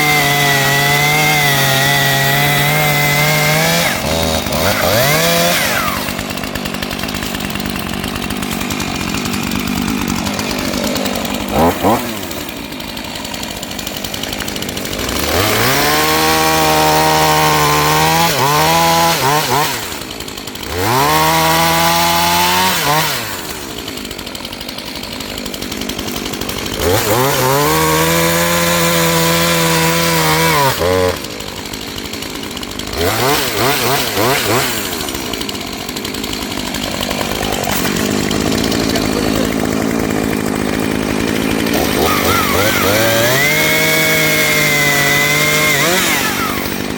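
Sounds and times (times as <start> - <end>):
chainsaw engine revving and idling: 0.0 - 46.9.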